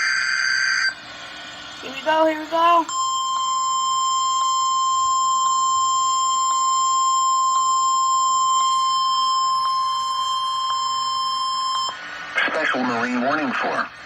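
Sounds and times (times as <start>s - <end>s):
steady warning alarm tone: 0.0s - 1.0s, 1.8s - 12.0s.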